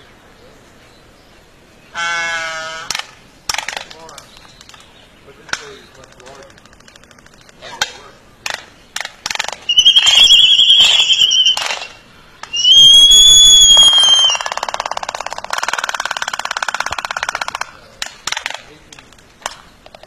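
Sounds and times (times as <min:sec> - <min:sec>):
sharp clicks: 0:02.9 - 0:10.2
fast rattling bird chatter: 0:03.5 - 0:13.0, 0:13.8 - 0:20.0
shrill whistled bird calls: 0:09.7 - 0:14.5.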